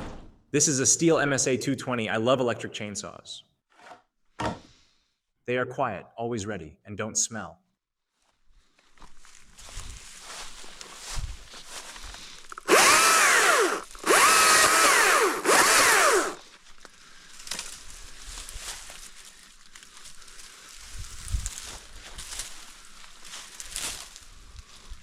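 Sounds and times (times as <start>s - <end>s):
electric chainsaw motor whining: 12.5s - 16.4s.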